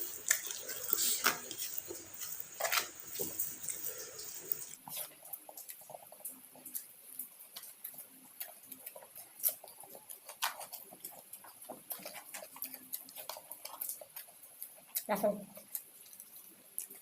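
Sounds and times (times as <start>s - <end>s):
small mouth clicks: 0.0s - 5.9s
wet chewing and mouth smacks: 0.0s - 17.0s.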